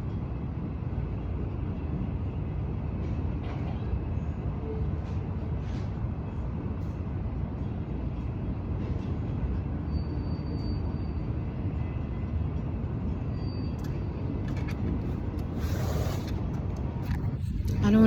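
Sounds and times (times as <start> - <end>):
train rumbling by: 0.0 - 18.0.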